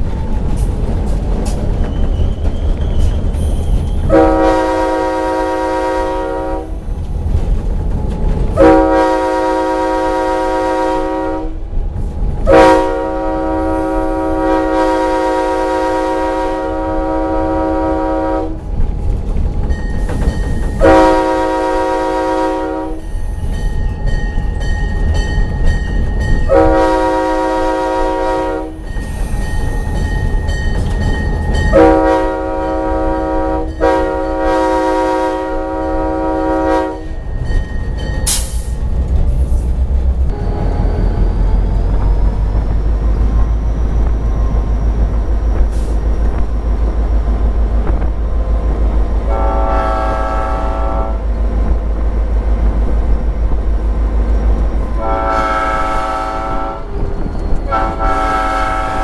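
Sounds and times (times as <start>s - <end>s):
locomotive air horn blasts: 4.1s - 6.8s, 8.6s - 11.7s, 12.4s - 18.6s, 20.8s - 23.1s, 26.5s - 28.8s, 31.7s - 37.2s, 49.2s - 51.3s, 54.9s - 57.0s, 57.7s - 59.0s.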